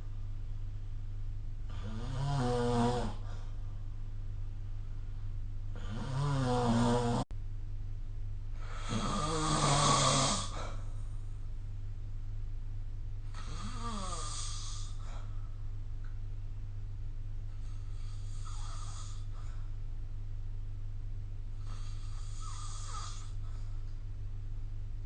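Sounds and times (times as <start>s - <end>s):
person snoring: 1.7s - 3.5s, 5.7s - 7.2s, 8.6s - 10.9s, 13.3s - 15.3s, 17.6s - 19.5s, 21.6s - 23.6s.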